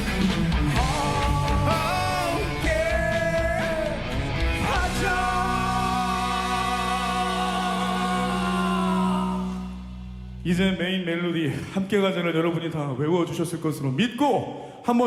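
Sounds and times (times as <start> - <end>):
live rock band playing: 0.0 - 8.6
drums: 0.0 - 10.8.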